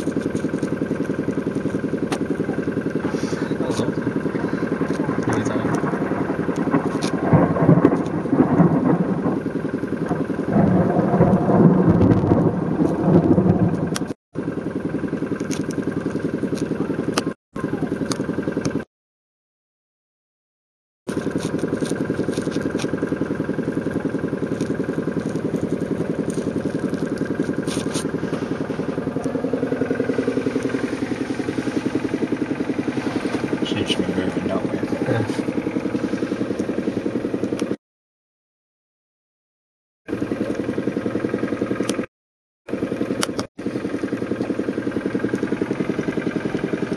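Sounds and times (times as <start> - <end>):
vehicle engine idling: 0.0 - 18.8, 21.1 - 37.8, 40.1 - 42.1, 42.7 - 46.9
thunder rumbling: 5.0 - 14.1.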